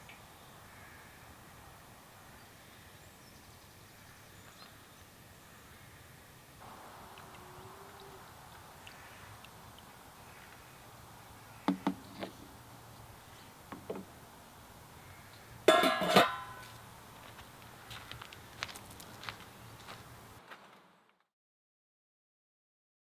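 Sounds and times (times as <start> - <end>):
sharp knocks: 11.7 - 12.4
ringing clatter: 15.7 - 16.6.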